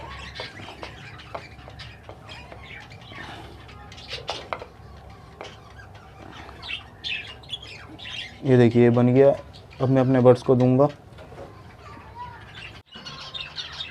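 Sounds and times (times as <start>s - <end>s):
caged birds chirping and squawking: 0.0s - 13.9s.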